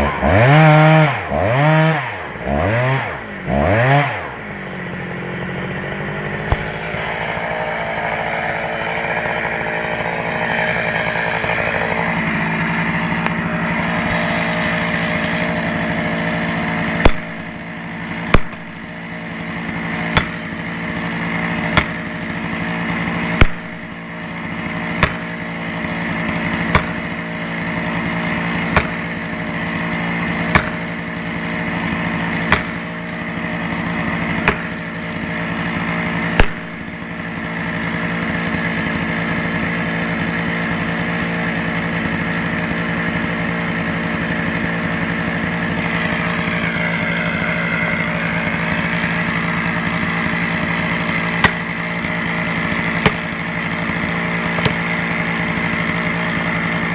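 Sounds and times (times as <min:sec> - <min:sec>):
chainsaw engine idling: 0:00.0 - 0:56.9
sharp knocks: 0:16.9 - 0:17.5, 0:20.1 - 0:20.5, 0:21.7 - 0:22.1, 0:25.0 - 0:25.3, 0:26.7 - 0:27.0, 0:28.7 - 0:29.1, 0:30.5 - 0:30.9, 0:32.5 - 0:32.8, 0:34.4 - 0:34.8.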